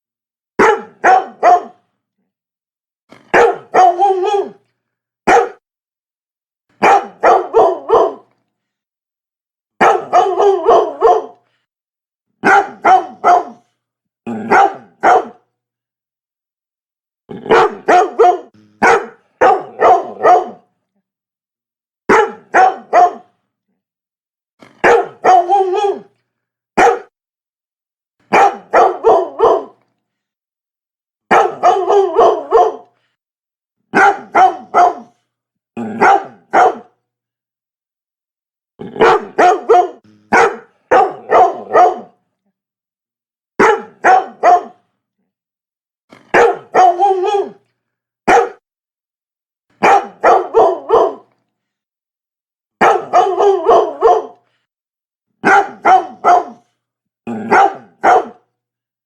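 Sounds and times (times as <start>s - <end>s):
dog barking: 0.6s - 1.8s, 3.2s - 4.6s, 5.2s - 5.6s, 6.8s - 8.3s, 9.8s - 11.4s, 12.4s - 13.7s, 14.4s - 15.5s, 17.4s - 20.7s, 22.1s - 23.4s, 24.7s - 26.1s, 26.8s - 27.2s, 28.3s - 29.8s, 31.3s - 33.0s, 33.9s - 35.2s, 35.8s - 37.0s, 38.9s - 42.2s, 43.6s - 44.9s, 46.2s - 47.6s, 48.2s - 48.6s, 49.8s - 51.3s, 52.8s - 54.4s, 55.4s - 56.7s, 57.3s - 58.5s.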